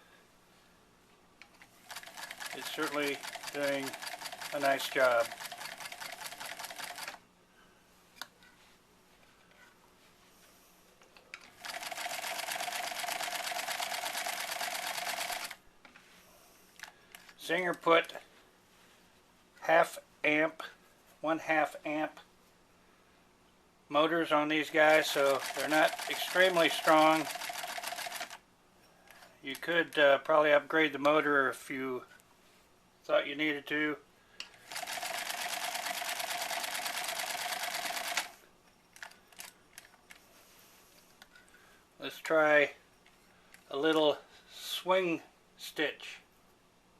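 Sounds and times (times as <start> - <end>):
sewing machine stitching: 1.8 - 7.2, 11.5 - 15.6, 24.8 - 28.4, 34.7 - 38.4.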